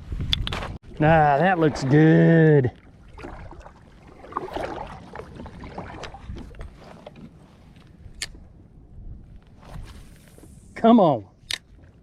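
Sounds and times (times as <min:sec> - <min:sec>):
water lapping against kayak hull: 0:00.8 - 0:08.1.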